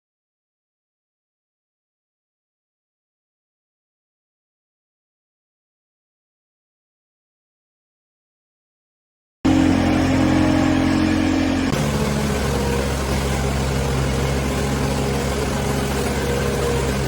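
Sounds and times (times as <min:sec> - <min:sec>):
loader engine running: 0:09.5 - 0:17.0.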